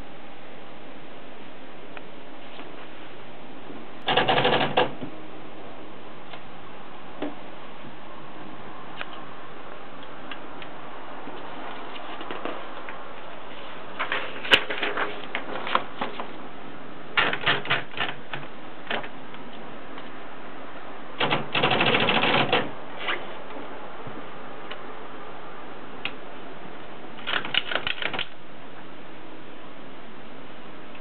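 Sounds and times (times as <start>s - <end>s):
typewriter keys striking: 21.2s - 22.7s.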